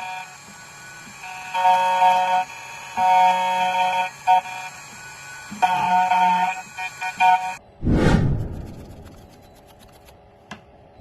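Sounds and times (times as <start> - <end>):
key cutting machine whine: 0.0 - 7.6.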